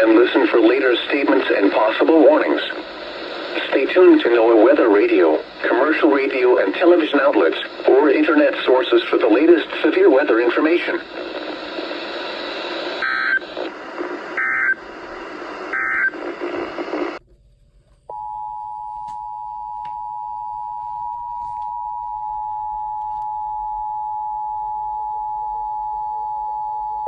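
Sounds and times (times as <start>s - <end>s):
harsh radio hiss: 0.0s - 17.2s.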